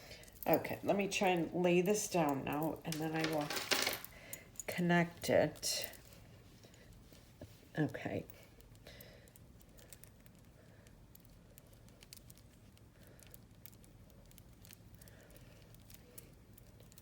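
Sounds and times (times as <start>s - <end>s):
beads and chain clicking: 2.2s - 4.7s.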